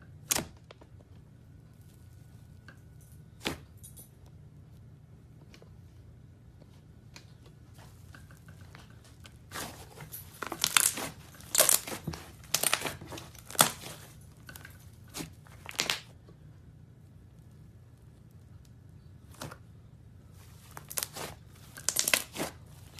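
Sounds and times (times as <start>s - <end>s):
slime crackles and pops: 10.5s - 14.0s, 15.1s - 16.1s, 20.6s - 22.9s.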